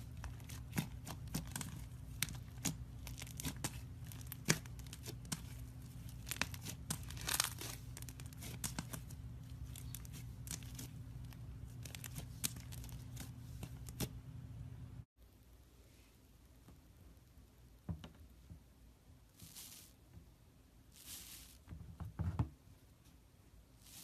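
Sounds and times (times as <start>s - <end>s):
slime crust crackling: 0.0s - 14.2s
low steady hum: 0.0s - 21.9s.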